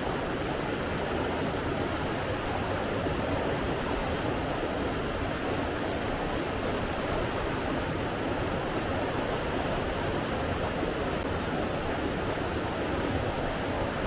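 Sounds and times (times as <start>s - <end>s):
rushing water: 0.0s - 14.0s.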